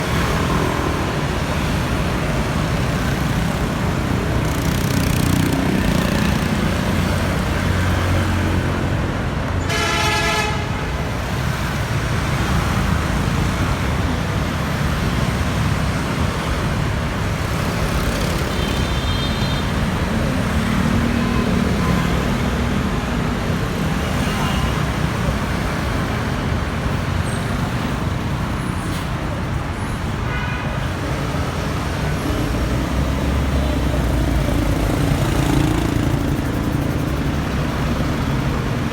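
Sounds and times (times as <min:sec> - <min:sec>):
passing traffic: 0:00.0 - 0:38.9
vehicle horn honking: 0:09.6 - 0:10.9.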